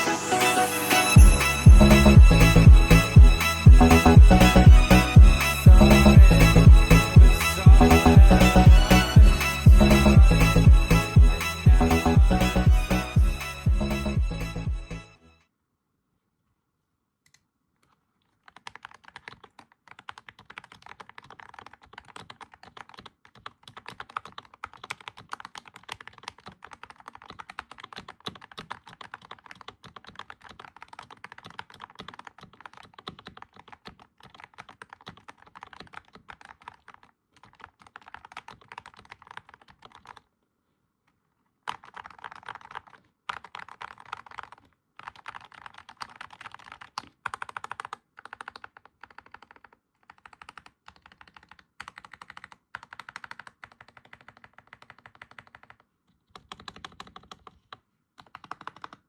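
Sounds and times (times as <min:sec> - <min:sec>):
mechanical keyboard typing: 0:18.2 - 0:40.3, 0:41.6 - 0:59.0.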